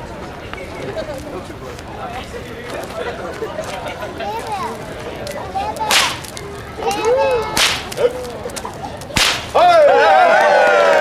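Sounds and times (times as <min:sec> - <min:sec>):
whip cracks: 0:05.8 - 0:06.4, 0:07.5 - 0:09.7
crowd cheering and whooping: 0:09.6 - 0:11.0.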